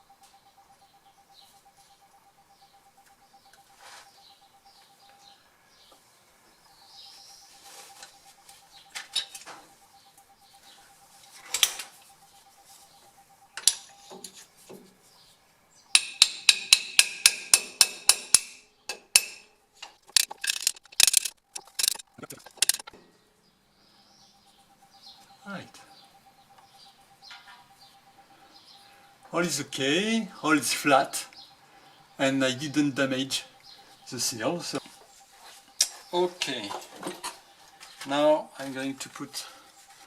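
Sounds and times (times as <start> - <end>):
hammer striking metal: 15.9 - 19.6.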